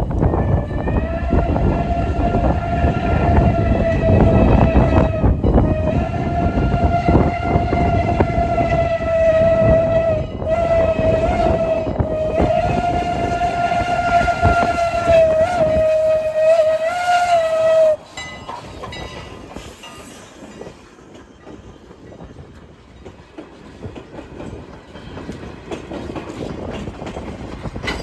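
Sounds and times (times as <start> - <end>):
low rumble of passing train: 0.0 - 28.0
steam locomotive whistle blasts: 0.2 - 18.3.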